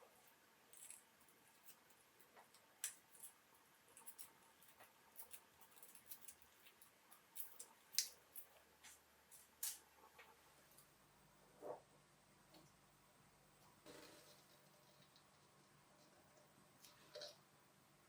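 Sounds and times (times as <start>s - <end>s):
metal tools clicking on watch parts: 4.0s - 8.5s.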